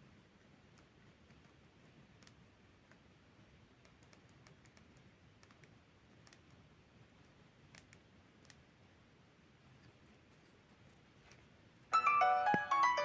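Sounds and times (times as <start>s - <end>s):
phone keypad button clicks: 12.1s - 13.0s.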